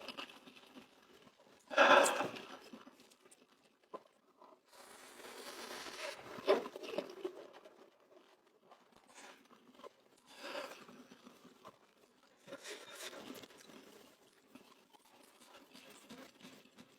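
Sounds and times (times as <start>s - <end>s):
chewing crunches: 8.7s - 16.9s.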